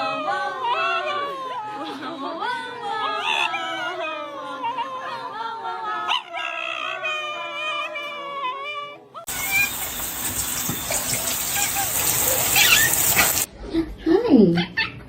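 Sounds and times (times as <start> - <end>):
dog howling: 0.0 - 1.9, 2.9 - 13.5
dog yelping: 6.0 - 13.5, 14.6 - 15.0.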